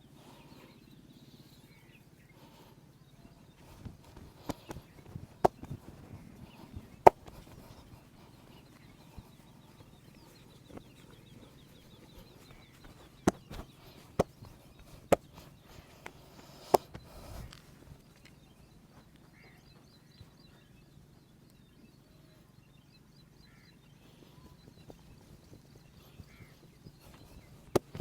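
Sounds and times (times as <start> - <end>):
massage smacks: 3.7 - 8.3, 10.6 - 15.8, 26.2 - 28.0.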